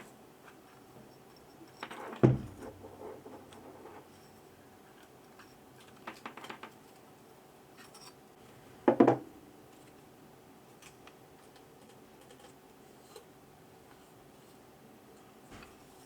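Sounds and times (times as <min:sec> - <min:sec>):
knock with short rattle: 0:02.2 - 0:02.8
faint scratches and ticks: 0:10.7 - 0:16.0.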